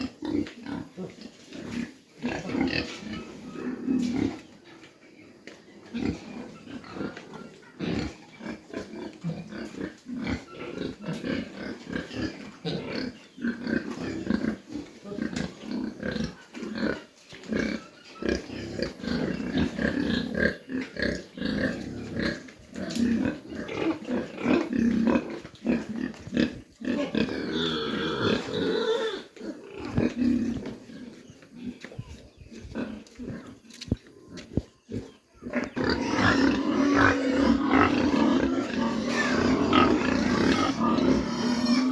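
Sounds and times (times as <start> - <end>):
pigs grunting: 0.0 - 4.8, 5.4 - 41.9
pig squealing: 26.9 - 30.0, 35.4 - 41.9.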